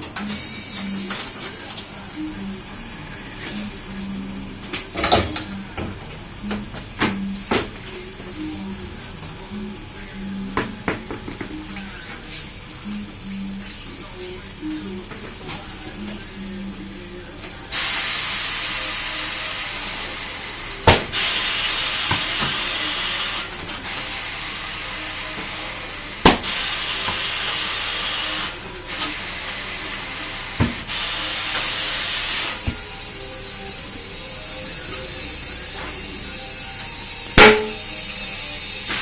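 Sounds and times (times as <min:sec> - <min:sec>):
compressed air hissing: 0:00.2 - 0:02.5, 0:17.7 - 0:39.0.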